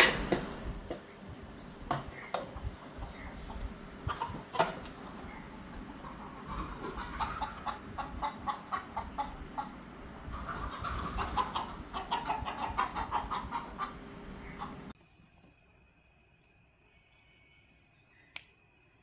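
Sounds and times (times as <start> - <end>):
chickens clucking: 0.0 - 15.0.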